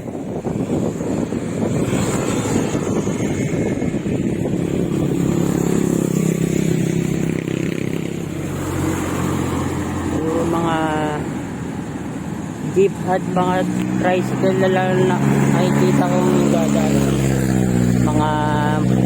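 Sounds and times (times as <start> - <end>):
engine droning: 0.0 - 19.0
road traffic passing: 0.0 - 19.0.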